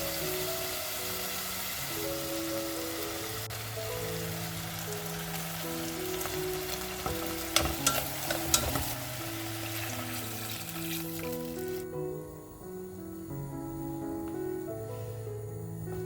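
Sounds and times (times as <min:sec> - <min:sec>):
food sizzling in a pan: 0:00.0 - 0:12.3
soft background music: 0:00.0 - 0:16.0
utensil clacking against pan: 0:07.0 - 0:09.0.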